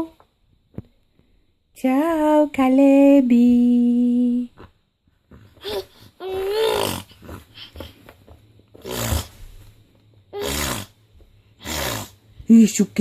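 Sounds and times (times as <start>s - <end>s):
baby making vocal noises: 5.4s - 7.8s, 10.3s - 11.0s.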